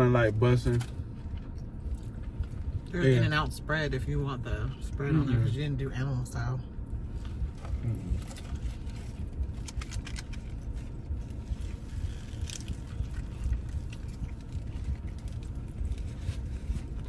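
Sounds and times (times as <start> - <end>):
steady low rumble: 0.0 - 17.0
paper wrappers crinkling: 8.2 - 17.0
small crackles and clicks: 9.6 - 16.8.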